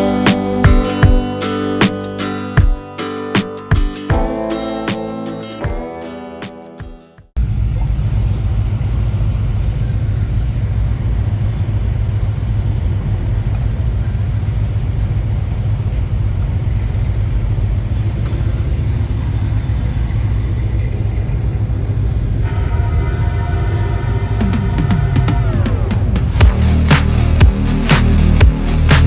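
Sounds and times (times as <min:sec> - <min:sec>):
car engine and road rumble: 0:07.4 - 0:29.0.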